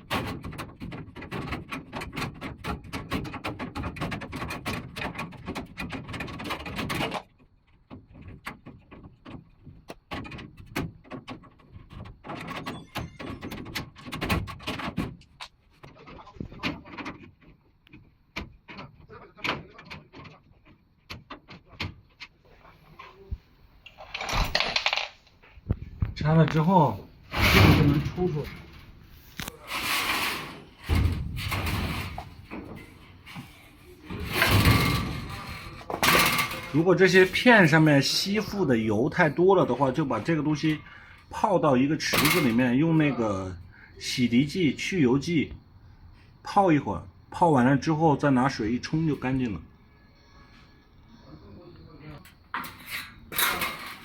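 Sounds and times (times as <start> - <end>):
metal parts clicking and rattling: 23.9 - 25.4, 27.6 - 37.8, 52.2 - 54.0
metal filter scraping out: 27.3 - 36.8.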